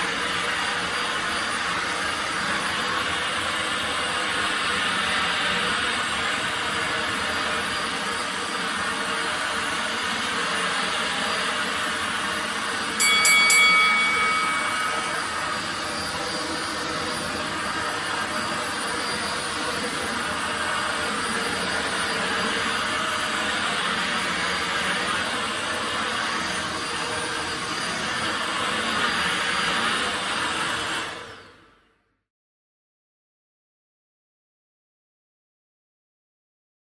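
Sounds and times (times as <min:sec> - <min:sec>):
brief high tone: 0:13.0 - 0:16.2.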